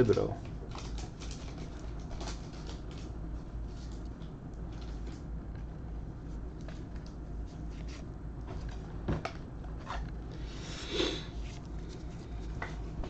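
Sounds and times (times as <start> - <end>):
steady low hum: 0.0 - 13.0.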